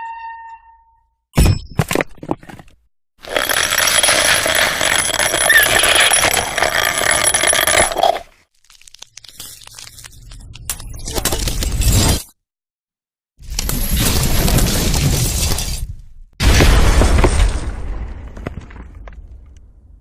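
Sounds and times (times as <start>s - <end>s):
debris clattering: 3.2s - 8.3s
sparse crackling clatter: 3.2s - 8.4s.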